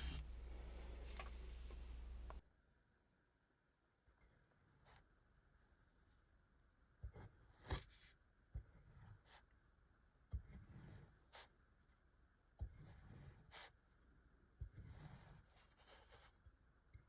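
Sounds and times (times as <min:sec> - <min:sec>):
metal tool tapping sand: 0:00.0 - 0:02.4.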